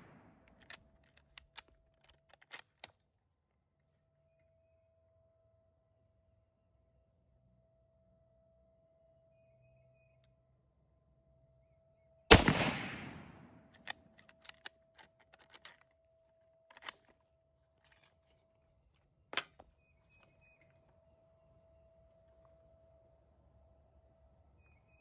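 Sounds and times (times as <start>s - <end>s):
rifle shot with echo: 0.0s - 0.3s, 12.3s - 13.7s.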